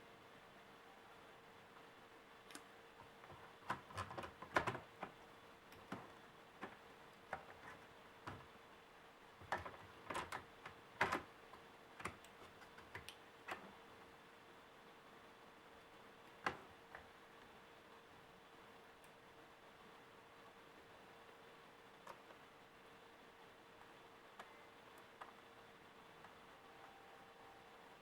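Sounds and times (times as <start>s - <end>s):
faint steady hum: 0.0s - 28.0s
laptop parts clicking and knocking: 3.0s - 8.5s, 9.4s - 11.3s, 16.4s - 17.0s.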